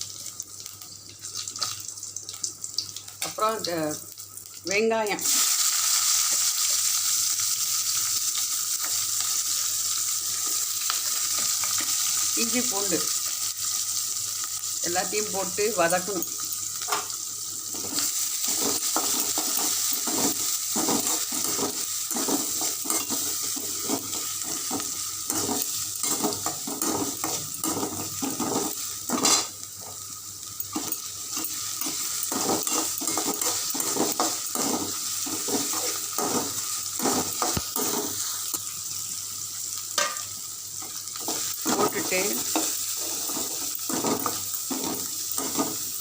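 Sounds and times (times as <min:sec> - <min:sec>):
food sizzling in hot oil: 0:00.0 - 0:46.0
spoon scraping and knocking pan: 0:16.9 - 0:30.0, 0:30.6 - 0:38.7, 0:40.0 - 0:45.9.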